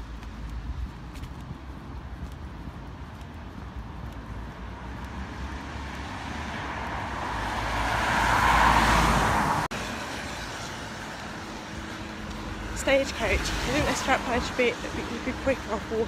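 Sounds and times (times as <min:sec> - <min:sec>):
road traffic noise: 0:00.0 - 0:16.0
vehicle passing close: 0:05.2 - 0:11.8.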